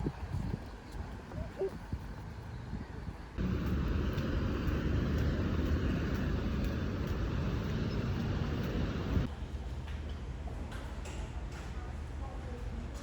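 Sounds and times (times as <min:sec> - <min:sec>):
street traffic rumble: 0:03.4 - 0:09.5.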